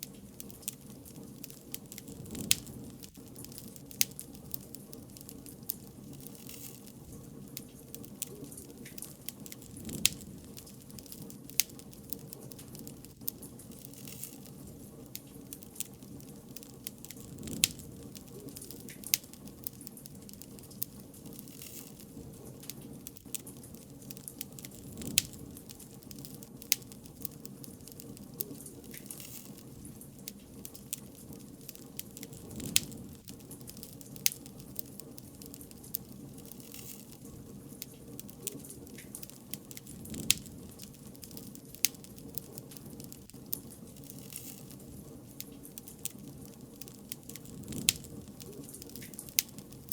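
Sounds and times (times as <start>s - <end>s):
wood fire crackling: 0.0s - 49.9s.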